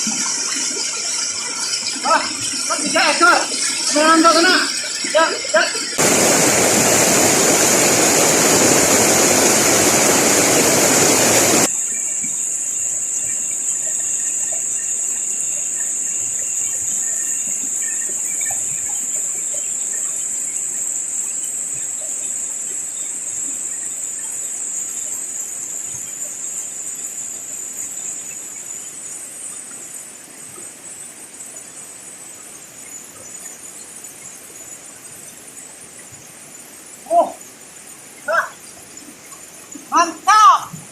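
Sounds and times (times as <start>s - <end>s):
loud rush of water: 0.0s - 11.7s, 34.6s - 40.9s
river current heard underwater: 0.0s - 12.4s
steady high hiss: 0.0s - 40.9s.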